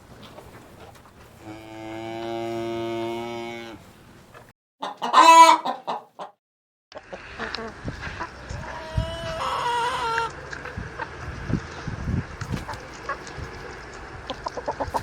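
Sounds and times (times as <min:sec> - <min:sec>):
cow mooing: 0:01.4 - 0:03.8
chicken call: 0:04.8 - 0:06.0, 0:08.6 - 0:10.4.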